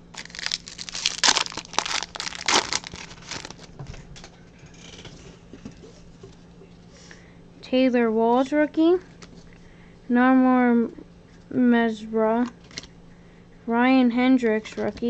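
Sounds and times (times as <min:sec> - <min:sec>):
wrapper crinkling and tearing: 0:00.0 - 0:03.7.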